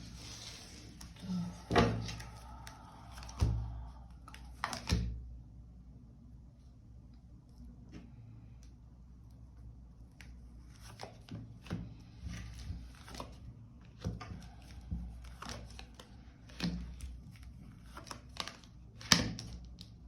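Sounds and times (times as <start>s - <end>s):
cards rustling: 14.0s - 20.0s.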